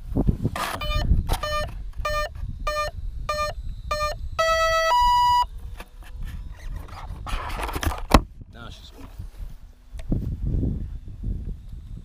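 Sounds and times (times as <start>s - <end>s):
speed controller short beeps: 0.8s - 5.5s.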